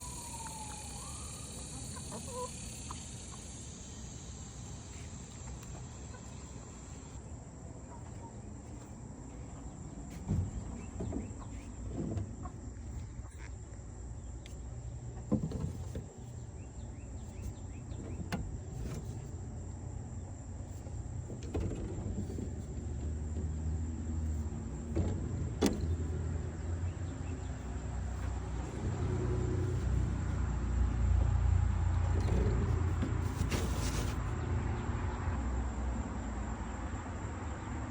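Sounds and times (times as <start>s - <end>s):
chickens clucking: 0.0s - 7.2s, 10.6s - 13.5s.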